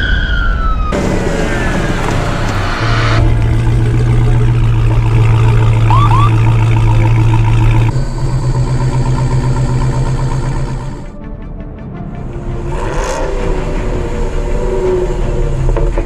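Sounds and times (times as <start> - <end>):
car engine droning: 0.9 - 11.2, 12.2 - 16.0
short rising chirps: 5.9 - 6.4.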